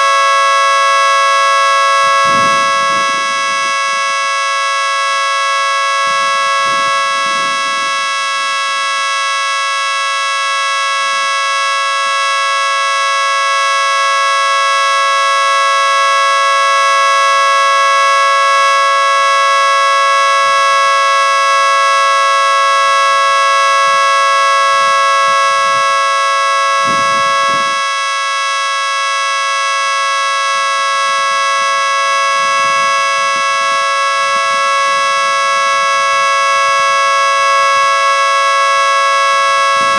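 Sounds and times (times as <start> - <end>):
three-tone siren chord: 0.0 - 39.9.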